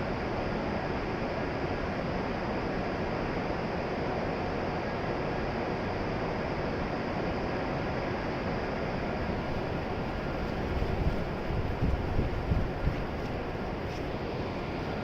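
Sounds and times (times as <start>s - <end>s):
steady rushing noise: 8.8s - 15.0s.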